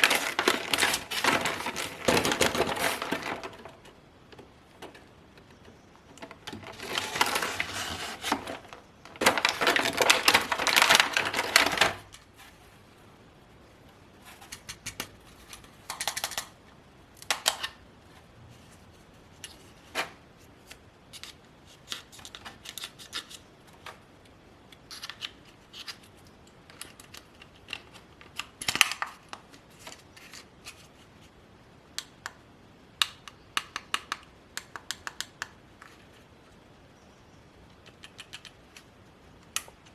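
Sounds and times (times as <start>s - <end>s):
packaging rustling and crinkling: 0.0s - 4.0s, 6.2s - 12.8s.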